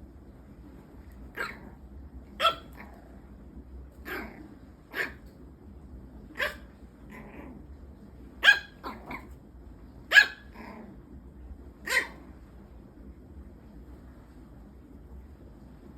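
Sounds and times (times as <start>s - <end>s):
dog barking: 1.3s - 1.8s, 2.4s - 3.0s, 4.0s - 5.2s, 6.4s - 7.4s, 8.4s - 9.3s, 10.1s - 10.6s, 11.8s - 12.3s.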